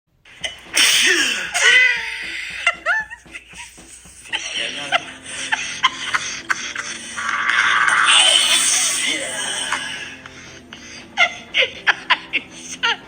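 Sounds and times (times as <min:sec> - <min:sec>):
music: 0:00.1 - 0:13.0
laughter: 0:01.5 - 0:08.0, 0:09.9 - 0:13.0
loud burst of noise: 0:06.9 - 0:10.0.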